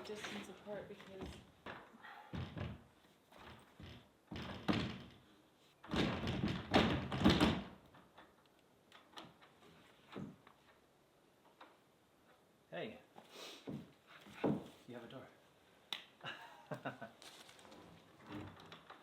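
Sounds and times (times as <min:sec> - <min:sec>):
wooden parts knocking and scraping: 0:00.0 - 0:12.5, 0:17.7 - 0:19.0.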